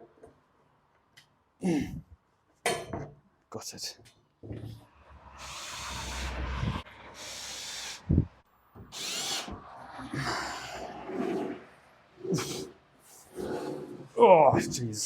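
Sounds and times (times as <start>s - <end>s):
power drill running: 8.9s - 9.6s.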